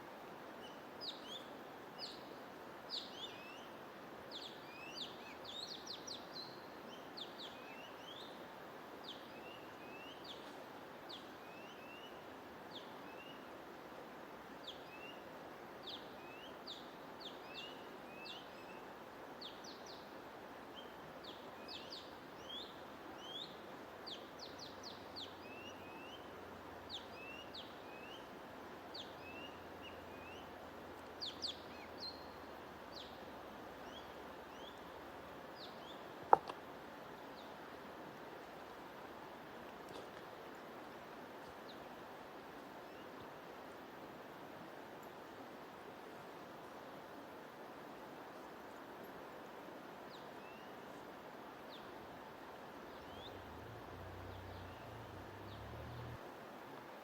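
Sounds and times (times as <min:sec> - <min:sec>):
steady background hiss: 0:00.0 - 0:57.0
songbirds chirping: 0:14.6 - 0:43.8, 0:50.0 - 0:56.3.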